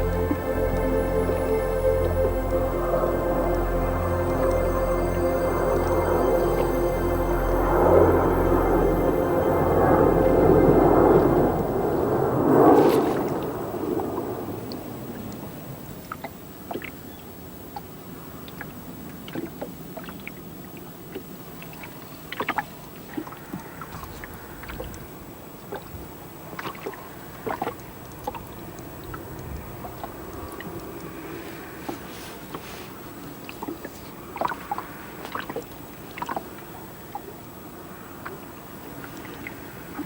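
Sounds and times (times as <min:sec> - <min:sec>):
rush of noise: 0:00.0 - 0:15.9
water lapping against boat: 0:12.5 - 0:40.0.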